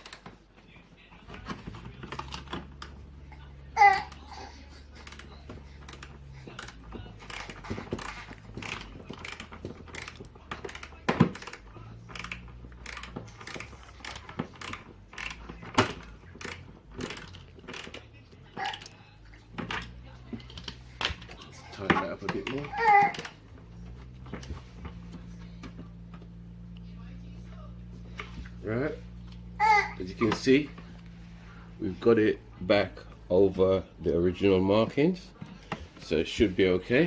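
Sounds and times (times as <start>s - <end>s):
screwdriver clicks and creaks: 0.0s - 0.3s, 5.0s - 19.0s, 19.6s - 23.4s.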